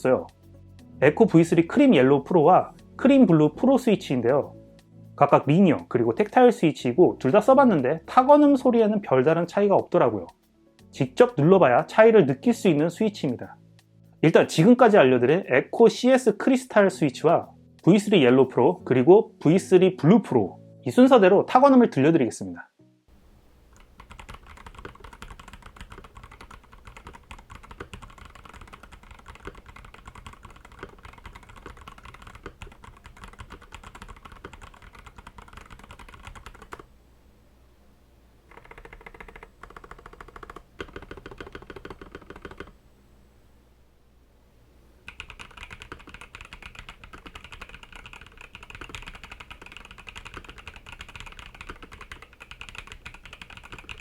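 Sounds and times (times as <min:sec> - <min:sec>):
mechanical keyboard keystroke clacks: 0:24.0 - 0:36.8, 0:38.5 - 0:42.7, 0:45.1 - 0:54.0.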